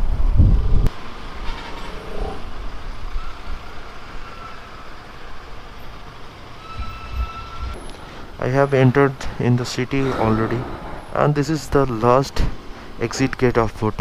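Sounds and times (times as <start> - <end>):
vehicle engines running: 0.0 - 14.0
loud low rumble: 1.8 - 3.0.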